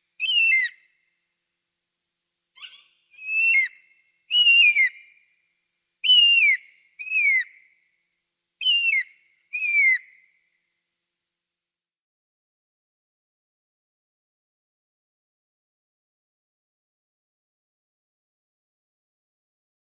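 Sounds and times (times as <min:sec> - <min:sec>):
eagle crying: 0:02.6 - 0:03.7.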